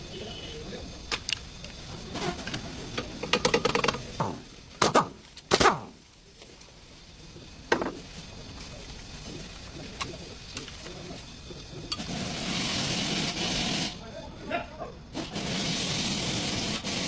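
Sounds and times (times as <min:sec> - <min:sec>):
clicks and rattles of metal parts: 0:01.1 - 0:04.4.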